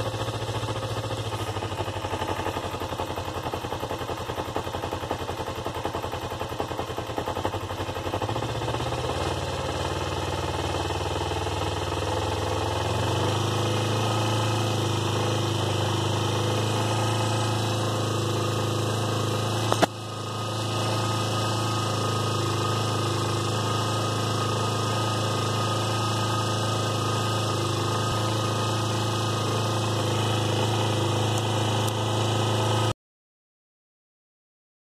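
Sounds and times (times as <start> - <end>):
motorcycle engine idling: 0.0 - 32.9
sharp click: 19.7 - 20.0.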